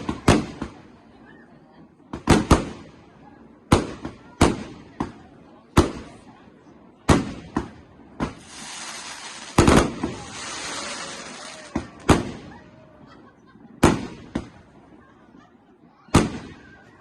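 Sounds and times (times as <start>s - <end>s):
crackling hiss of fireworks: 0.0s - 13.0s, 13.7s - 15.0s, 16.1s - 17.0s
fireworks shells bursting: 8.3s - 12.2s.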